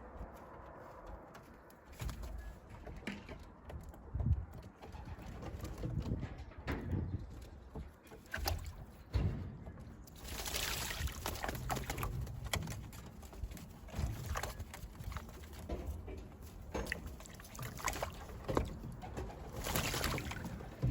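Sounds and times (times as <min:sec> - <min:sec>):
pigeons splashing in water: 0:08.2 - 0:08.9, 0:10.2 - 0:15.8, 0:16.6 - 0:20.9.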